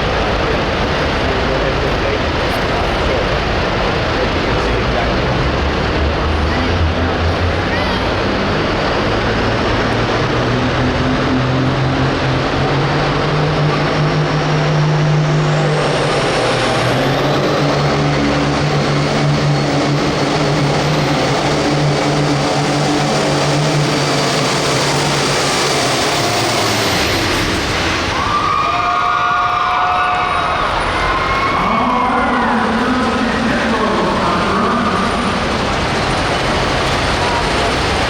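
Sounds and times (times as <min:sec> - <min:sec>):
tractor engine at high revs: 0:08.2 - 0:28.1, 0:31.9 - 0:38.0.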